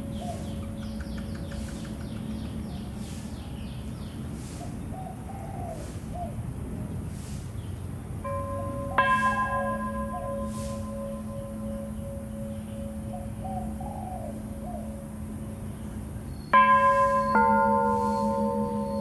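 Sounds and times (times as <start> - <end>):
sustained bell tone: 0.0 - 1.0, 8.2 - 19.0
lower warbled bird calls: 0.0 - 6.4, 8.7 - 19.0
background hiss: 0.0 - 19.0
high falling bird chirps: 8.9 - 19.0.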